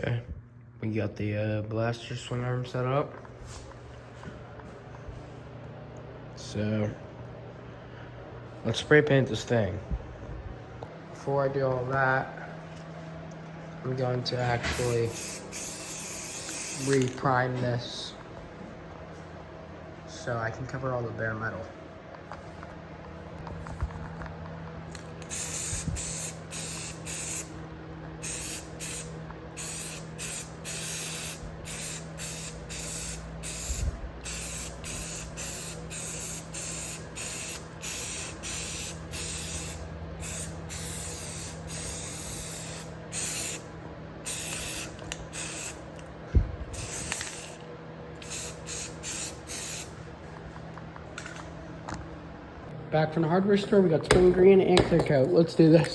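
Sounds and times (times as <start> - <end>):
spray can hissing: 14.7 - 17.0, 25.2 - 27.5, 28.2 - 45.8, 46.8 - 47.6, 48.2 - 49.9.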